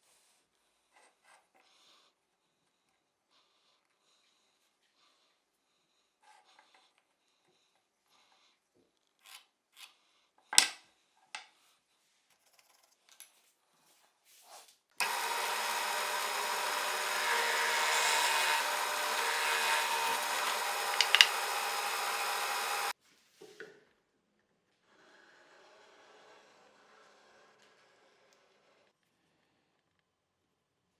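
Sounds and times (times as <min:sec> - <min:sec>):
clicks and knocks of wood and tools: 0:15.0 - 0:22.9
power tool running: 0:15.0 - 0:23.0.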